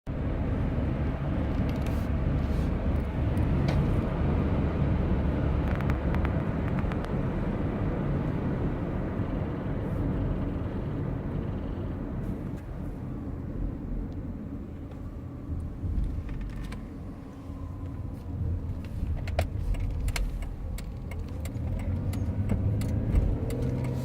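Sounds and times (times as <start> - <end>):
car engine and road rumble: 0.1 - 24.0
brakes clicking: 1.4 - 4.4, 5.6 - 7.4, 14.1 - 24.0.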